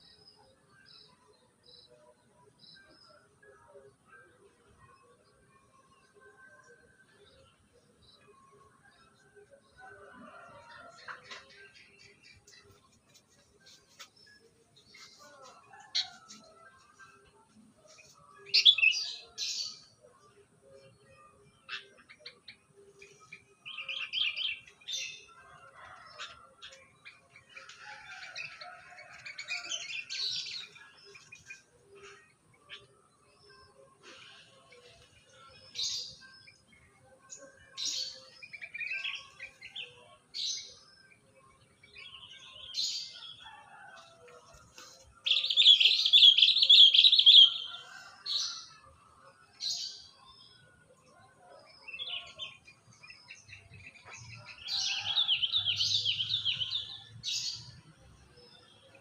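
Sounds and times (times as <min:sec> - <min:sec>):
birds chirping and twittering: 0:00.0 - 0:59.0
bird chirping: 0:45.2 - 0:48.2.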